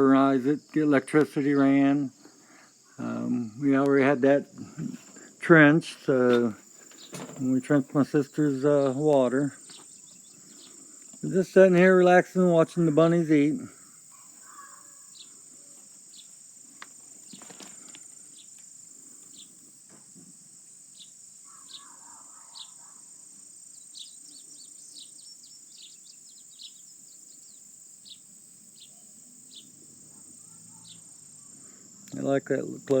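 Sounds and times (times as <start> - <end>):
high-pitched insect drone: 4.7 - 33.0
bird chirps: 6.8 - 11.3, 13.8 - 16.4, 20.9 - 23.1, 23.7 - 31.7.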